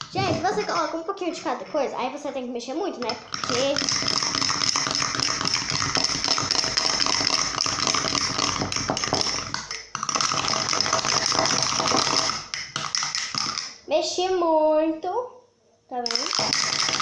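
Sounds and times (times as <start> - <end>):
utensil scraping a pot: 0.0 - 2.1, 3.0 - 13.7.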